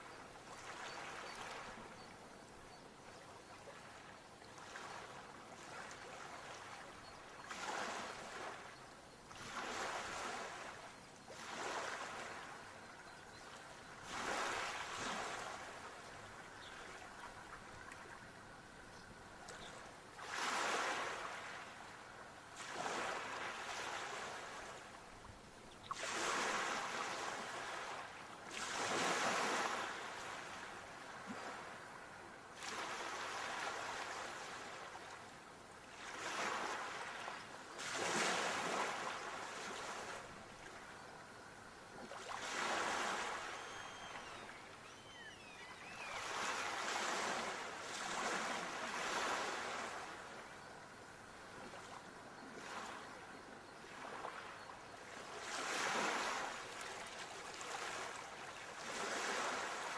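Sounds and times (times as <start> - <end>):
sea waves breaking: 42.1 - 50.2.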